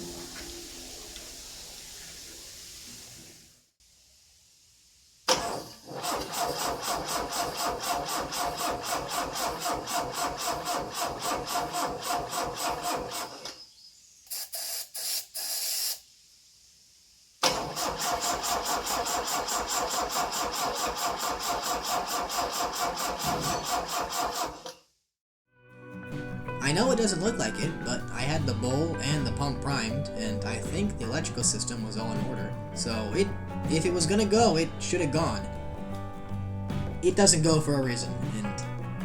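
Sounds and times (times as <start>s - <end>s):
engine cranking on starter: 5.3s - 13.6s, 17.4s - 24.8s.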